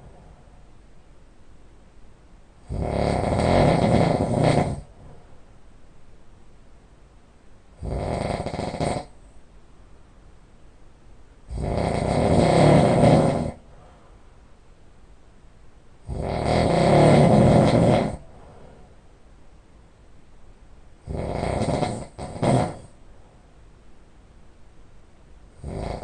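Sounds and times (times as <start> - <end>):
person snoring loudly: 2.6 - 4.9, 7.8 - 9.2, 11.5 - 13.6, 16.0 - 18.2, 21.0 - 23.0, 25.6 - 26.0.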